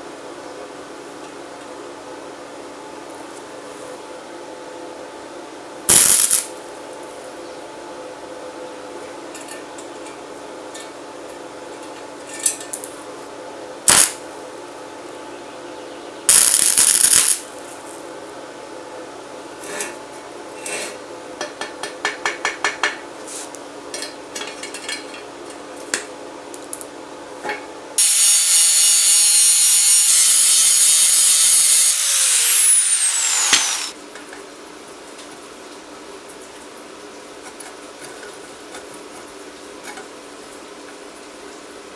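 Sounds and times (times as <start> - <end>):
power tool running: 5.9 - 6.5, 28.0 - 34.0.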